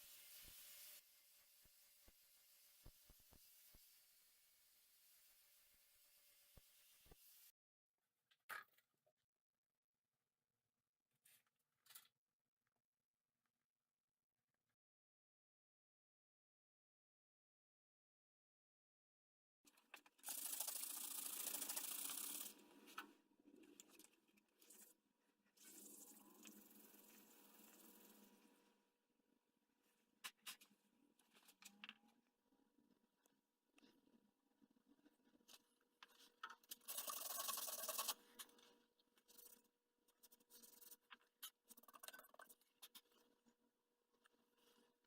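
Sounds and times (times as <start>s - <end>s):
fast rasping scrape: 36.8s - 38.3s.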